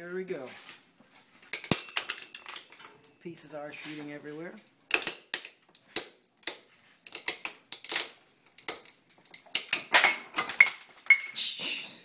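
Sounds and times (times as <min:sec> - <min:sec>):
plastic cracking and snapping: 0:04.9 - 0:11.1.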